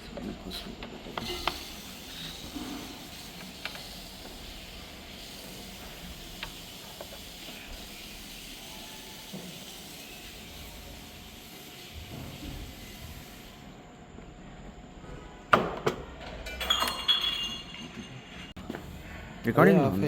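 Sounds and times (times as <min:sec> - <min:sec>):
steady hiss: 0:00.0 - 0:13.8.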